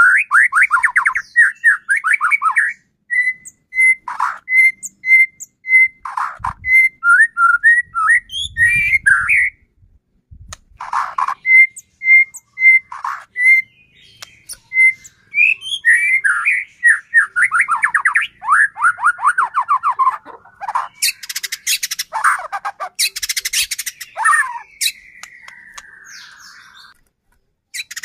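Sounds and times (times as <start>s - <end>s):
bird harsh rattling chatter: 10.8s - 11.4s
bird whistled notes: 11.4s - 20.0s.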